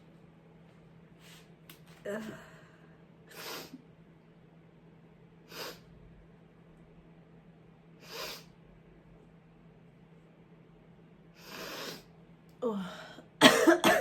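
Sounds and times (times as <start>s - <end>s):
congested nose sniffs: 8.0s - 8.5s, 11.4s - 12.1s.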